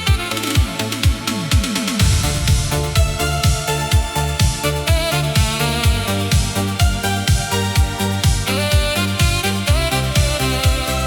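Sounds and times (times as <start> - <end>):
kick drum: 0.0 - 11.0
pulsing bass line: 1.1 - 11.0
falling-pitch synth drum hits: 1.9 - 5.7
sustained synth chords: 2.0 - 5.8.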